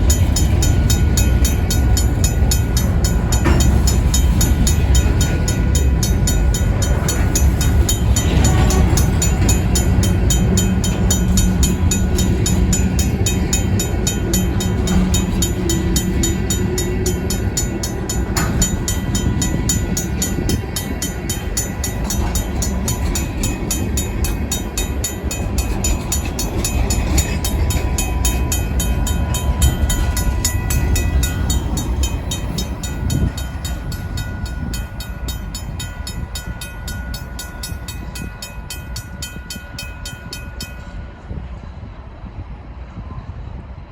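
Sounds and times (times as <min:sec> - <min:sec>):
crossing bell ringing: 0:00.0 - 0:41.6
freight train rumbling: 0:00.0 - 0:43.9.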